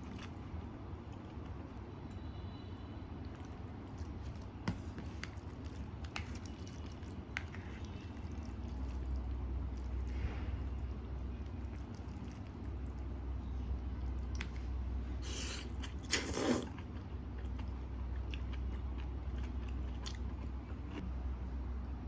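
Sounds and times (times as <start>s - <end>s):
person chewing: 0.0s - 0.4s, 3.3s - 13.2s, 15.2s - 21.0s
steady low hum: 0.0s - 22.0s.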